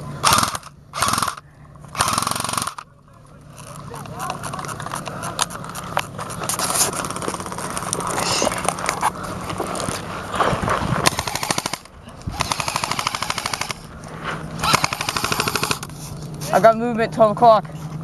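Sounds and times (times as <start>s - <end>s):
airsoft guns full-auto bursts: 0.2s - 2.9s, 6.8s - 7.9s, 11.0s - 13.9s, 14.6s - 15.9s.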